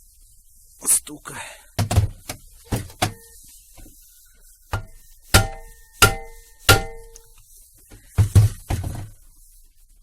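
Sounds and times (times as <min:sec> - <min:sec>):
sharp ringing metal knocks: 0:04.8 - 0:07.2.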